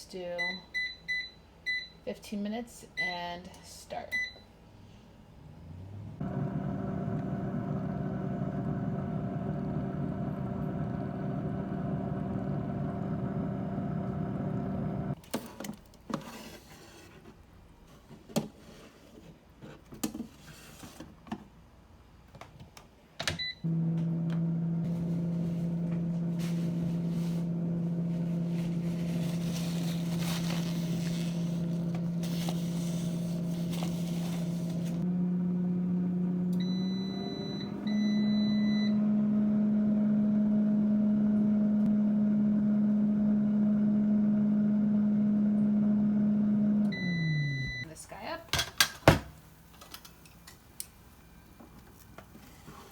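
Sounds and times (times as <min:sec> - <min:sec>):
air fryer fan humming: 0:06.2 - 0:15.2, 0:23.4 - 0:47.7.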